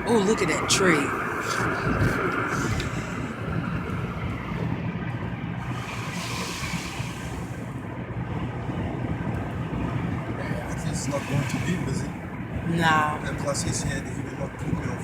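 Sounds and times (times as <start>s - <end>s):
car road noise inside cabin: 0.0s - 15.0s
hiss: 5.7s - 7.6s, 11.1s - 11.9s.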